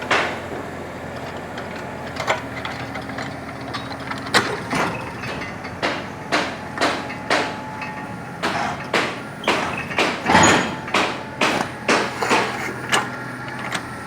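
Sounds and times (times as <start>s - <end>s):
sharp knocks: 8.4s - 12.6s.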